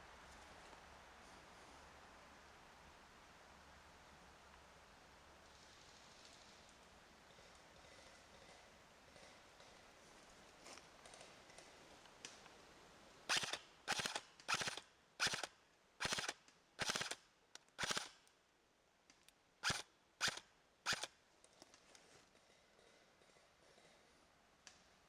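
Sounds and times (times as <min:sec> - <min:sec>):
airsoft gun firing bursts: 0:13.3 - 0:17.2, 0:17.8 - 0:18.2, 0:19.6 - 0:21.1.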